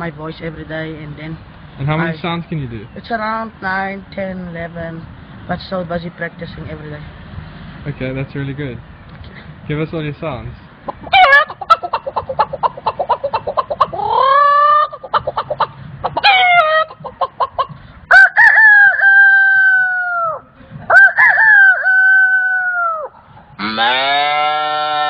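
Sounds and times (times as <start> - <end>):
man clucking like a chicken: 10.9 - 24.0
man imitating rooster crows: 18.1 - 25.0.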